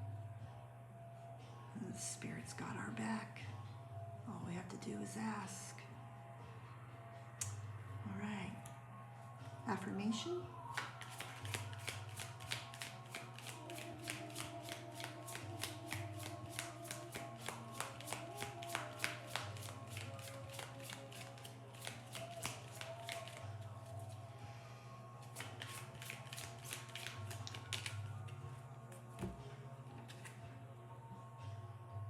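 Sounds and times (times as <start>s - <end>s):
soft background music: 0.0s - 32.0s
cards being shuffled: 10.7s - 24.1s, 25.3s - 29.3s.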